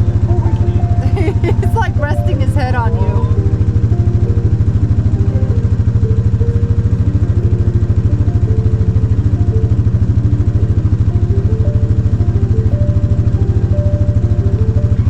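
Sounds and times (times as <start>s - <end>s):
faint shifting tones: 0.0s - 15.0s
motor running with rapid pulse: 0.0s - 15.0s.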